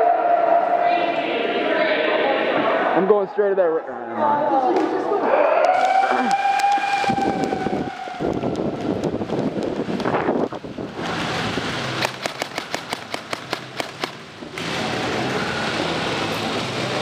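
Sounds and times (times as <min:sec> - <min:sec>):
airsoft guns firing: 0:12.0 - 0:14.2.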